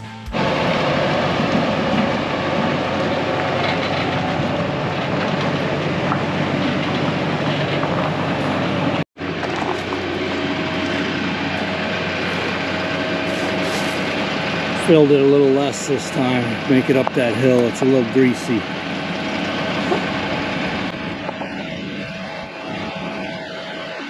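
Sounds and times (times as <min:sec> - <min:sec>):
diesel engine under load: 0:00.0 - 0:24.0
rattling and clanking: 0:00.3 - 0:15.0.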